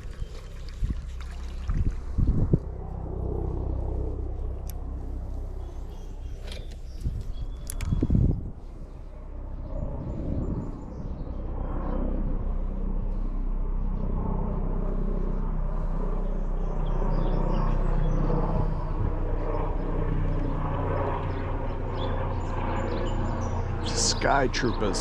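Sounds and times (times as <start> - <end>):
boat motor droning: 0.0 - 7.6, 17.8 - 25.0.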